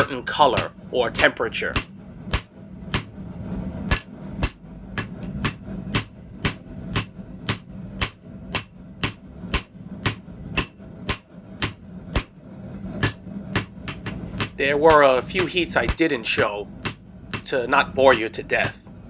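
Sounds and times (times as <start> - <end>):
hammer striking steel on anvil: 0.0 - 3.2, 3.8 - 12.4, 13.0 - 18.9
low hum: 0.0 - 19.0.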